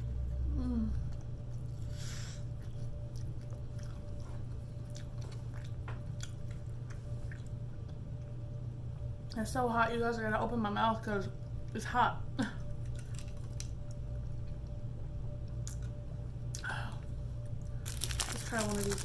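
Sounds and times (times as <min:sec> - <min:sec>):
low hum: 0:00.0 - 0:19.0
person chewing food: 0:01.0 - 0:08.3.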